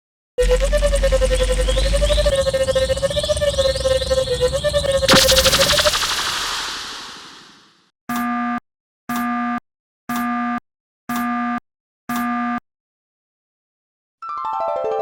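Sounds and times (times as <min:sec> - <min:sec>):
synthesized electronic beeps: 0:00.7 - 0:07.6
hissing noise: 0:05.1 - 0:07.6.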